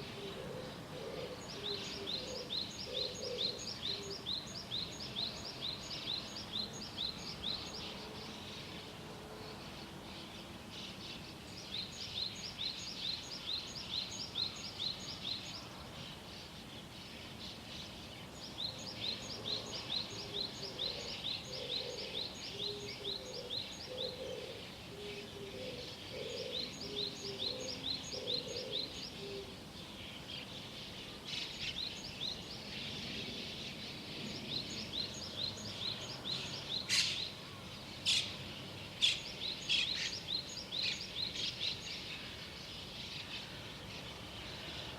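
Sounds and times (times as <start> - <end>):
small songbirds chirping: 0.0 - 44.9
sharp loud bird calls: 34.7 - 42.6.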